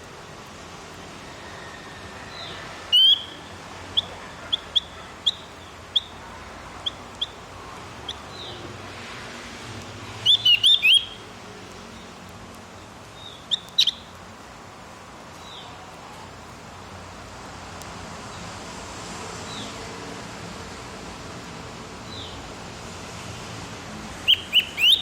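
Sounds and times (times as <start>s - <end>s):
bird chirping: 2.3s - 7.4s, 8.0s - 8.7s, 10.1s - 11.2s, 13.2s - 14.1s, 24.2s - 25.0s.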